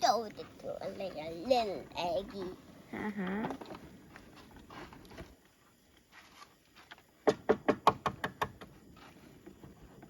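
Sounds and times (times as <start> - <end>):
sharp knocks: 7.2 - 8.7.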